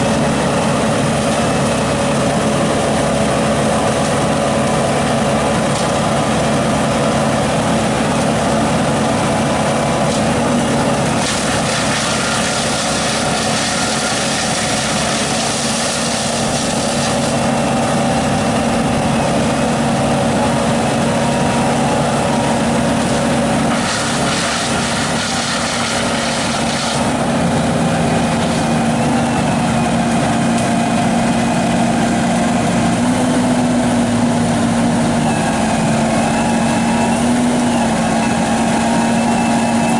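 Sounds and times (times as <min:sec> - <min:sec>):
heavy engine running steadily: 0:00.0 - 0:39.9.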